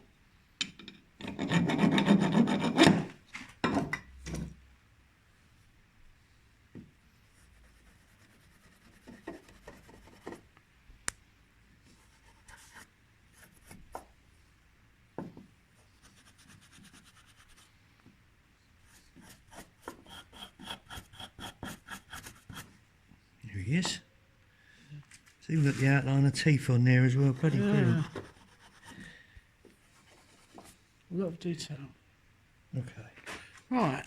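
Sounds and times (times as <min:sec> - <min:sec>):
file rasping on metal: 0:01.2 - 0:03.1, 0:19.1 - 0:22.8.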